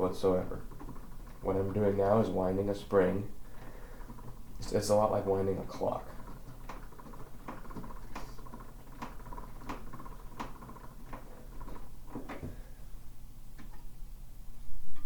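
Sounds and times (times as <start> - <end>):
winding ratchet ticking: 0.6 - 2.3, 5.8 - 11.8.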